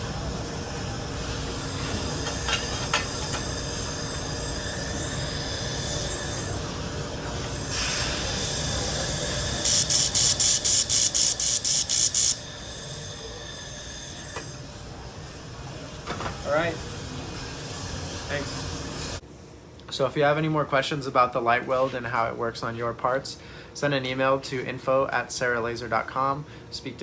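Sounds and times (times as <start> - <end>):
laser welder hiss: 0.4 - 14.6, 16.4 - 19.2
rapid welding pulses: 3.0 - 15.4.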